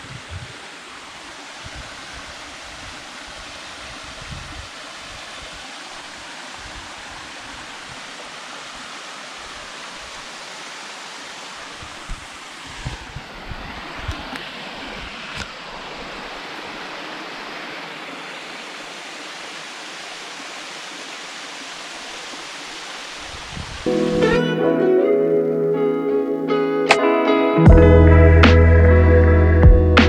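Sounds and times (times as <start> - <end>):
waterfall rushing: 0.0 - 27.1.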